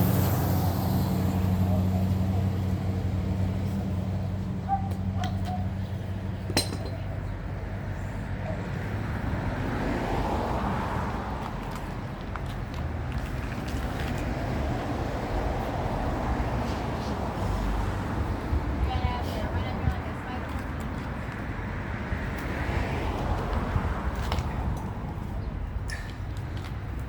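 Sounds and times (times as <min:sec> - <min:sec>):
vehicle engine humming: 0:00.0 - 0:09.7
low traffic rumble: 0:00.0 - 0:27.0.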